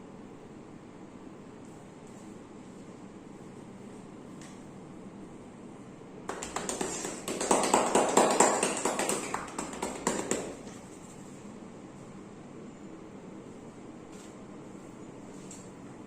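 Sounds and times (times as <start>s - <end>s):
hands slapping on bare skin: 6.3s - 10.6s.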